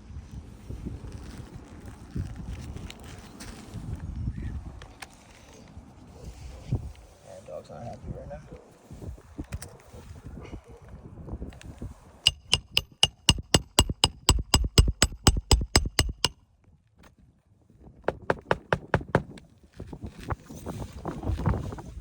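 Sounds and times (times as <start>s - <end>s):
hand tool tapping metal: 12.3s - 16.3s.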